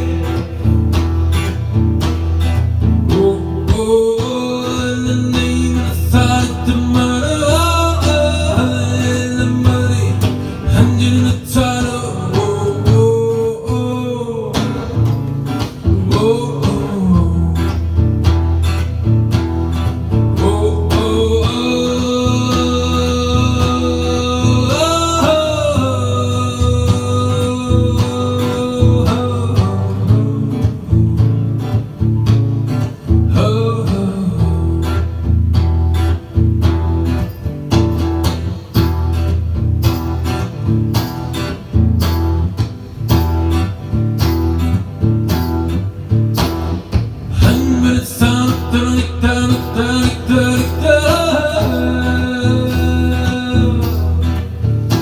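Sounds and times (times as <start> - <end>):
acoustic guitar strumming: 0.0 - 55.0
person singing: 3.1 - 17.9, 20.3 - 31.8, 33.1 - 35.1, 47.3 - 55.0.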